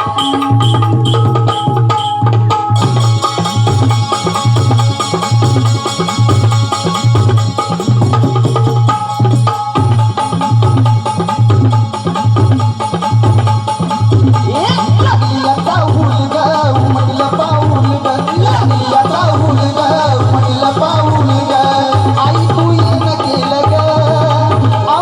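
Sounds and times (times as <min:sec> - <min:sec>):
held melody tone: 0:00.0 - 0:12.0
hand drum beat: 0:00.0 - 0:25.0
cymbal shimmer: 0:02.8 - 0:09.8.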